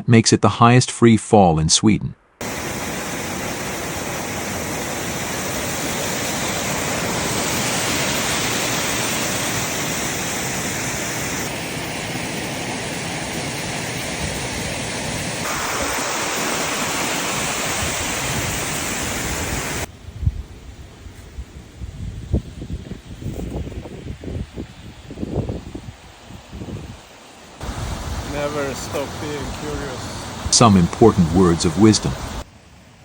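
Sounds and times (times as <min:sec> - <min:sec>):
waterfall roaring: 0:02.4 - 0:19.9, 0:27.6 - 0:32.4.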